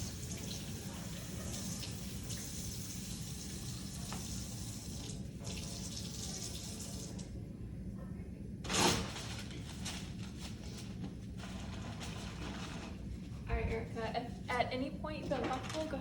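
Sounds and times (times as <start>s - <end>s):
tap water running into sink: 0.0s - 7.2s.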